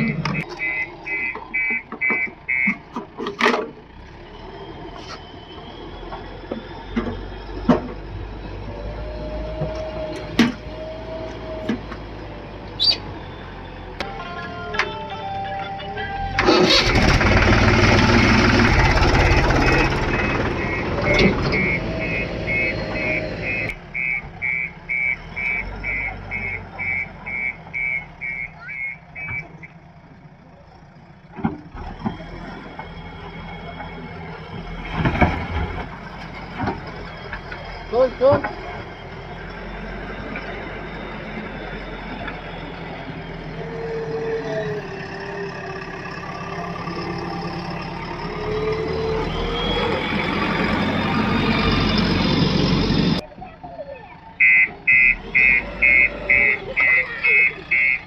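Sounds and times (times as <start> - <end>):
reversing alarm beeping: 0.0 - 2.8, 14.0 - 29.7, 47.4 - 53.2, 54.4 - 58.0
backhoe engine hum: 0.0 - 58.0.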